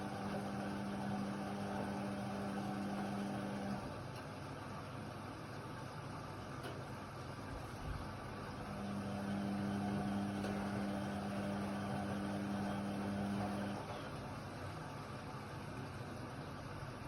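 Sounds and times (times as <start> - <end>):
washer-dryer running: 0.0 - 17.0
motor hum: 7.8 - 14.6.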